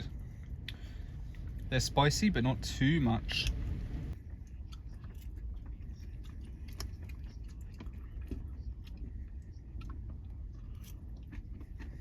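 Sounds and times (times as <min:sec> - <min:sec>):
steady low rumble: 0:00.0 - 0:12.0
person chewing noodles: 0:04.2 - 0:12.0.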